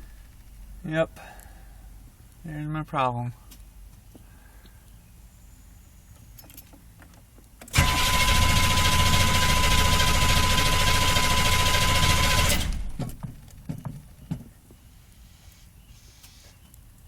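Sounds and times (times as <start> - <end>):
diesel engine running with whine: 7.7 - 13.6.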